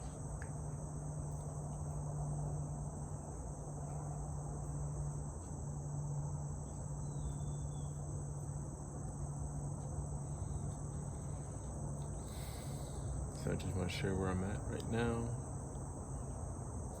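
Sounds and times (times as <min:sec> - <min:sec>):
insects chirring: 0:00.0 - 0:17.0
highway traffic rumble: 0:08.0 - 0:17.0.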